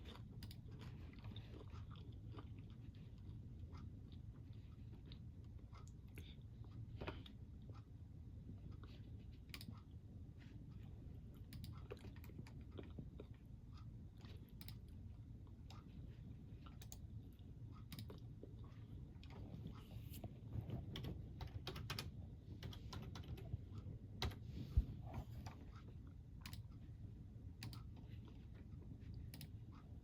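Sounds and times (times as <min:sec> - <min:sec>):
crunchy snack chewing: 0:00.0 - 0:03.7
steady low rumble: 0:00.0 - 0:30.0.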